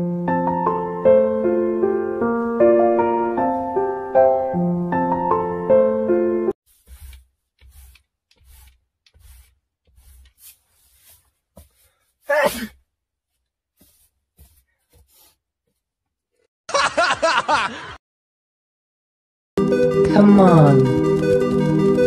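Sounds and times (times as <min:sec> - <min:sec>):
person sneezing: 0:12.2 - 0:12.8.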